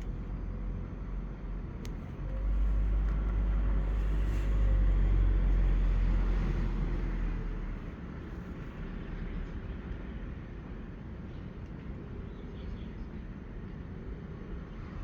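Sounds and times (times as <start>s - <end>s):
vehicle passing by: 2.3s - 7.8s.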